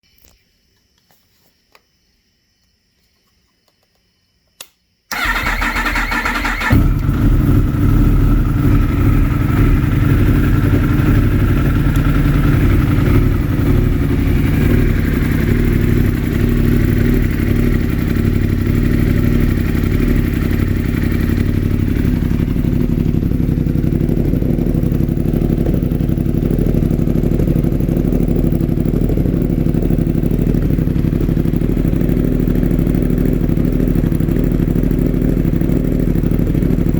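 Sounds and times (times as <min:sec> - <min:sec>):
click: 0:03.6 - 0:04.8
motorcycle engine starter cranking: 0:05.1 - 0:07.7
motorcycle engine idling: 0:05.1 - 0:36.9.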